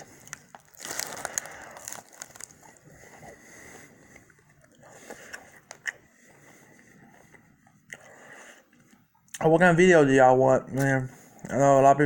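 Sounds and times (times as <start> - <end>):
person biting and chewing: 0.0 - 3.5, 4.2 - 6.1.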